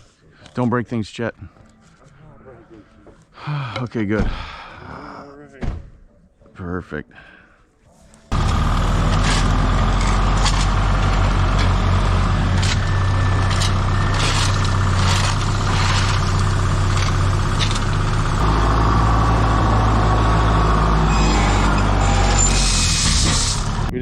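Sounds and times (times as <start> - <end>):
vehicle engine running: 8.3 - 24.0.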